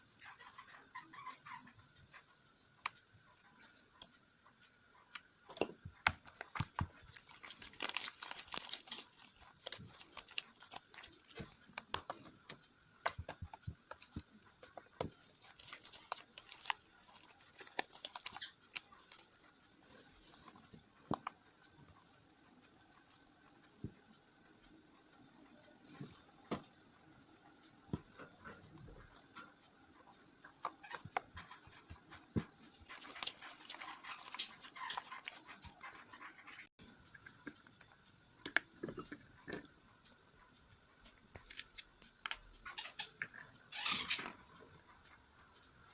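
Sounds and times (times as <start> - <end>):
slime squelching by hand: 6.0 - 21.9, 30.6 - 36.7.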